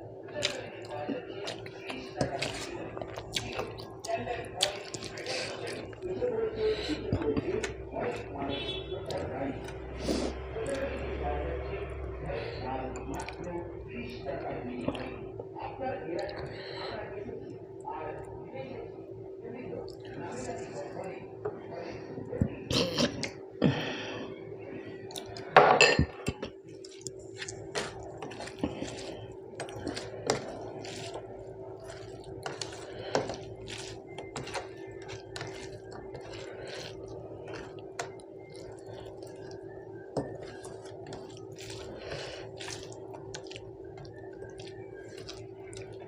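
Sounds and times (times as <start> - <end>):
steady low hum: 0.0 - 46.0
dishes clattering: 25.6 - 26.3.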